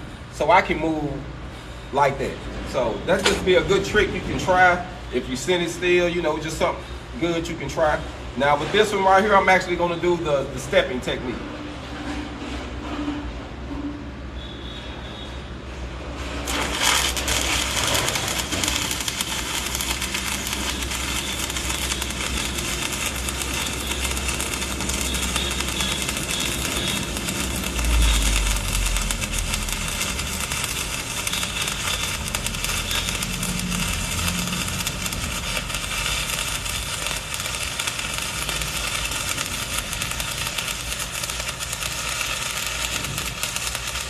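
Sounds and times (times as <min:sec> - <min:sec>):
welding arc crackling: 0:16.3 - 0:44.0.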